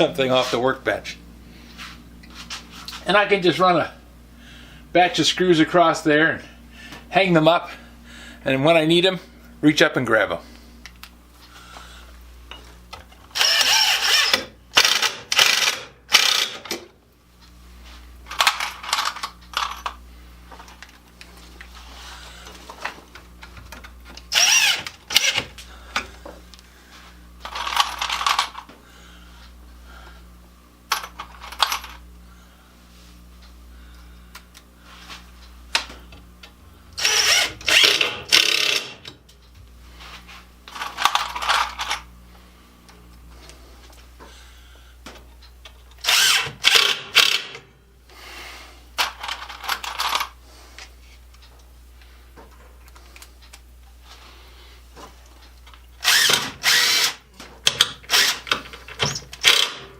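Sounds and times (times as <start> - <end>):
power driver driving screws into wood: 13.3 - 16.8, 24.3 - 25.5, 37.0 - 39.1, 46.0 - 47.6, 56.0 - 59.9.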